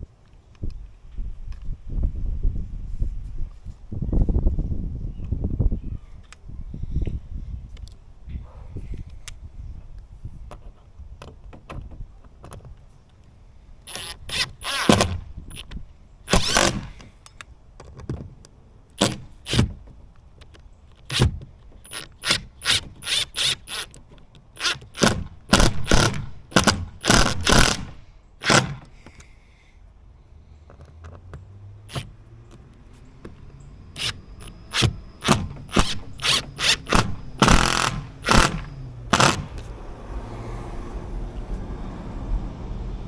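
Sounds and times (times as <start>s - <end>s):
ratcheting driver clicking: 13.8s - 17.5s, 18.4s - 29.3s, 30.7s - 39.7s.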